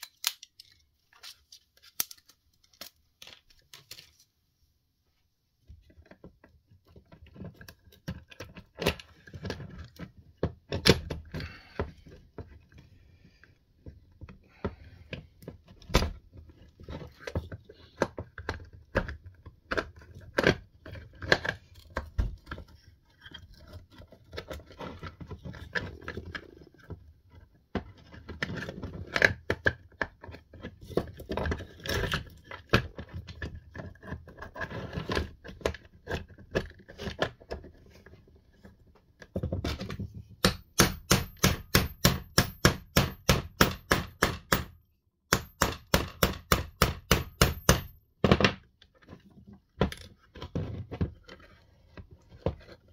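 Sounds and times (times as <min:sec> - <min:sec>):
small hard parts being handled: 0:00.0 - 0:04.4
hand tools clicking and tapping: 0:40.4 - 0:48.0.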